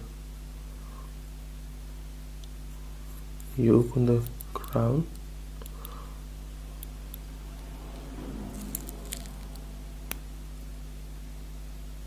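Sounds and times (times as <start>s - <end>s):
electrical hum: 0.0s - 12.0s
light rubbing: 5.6s - 10.9s.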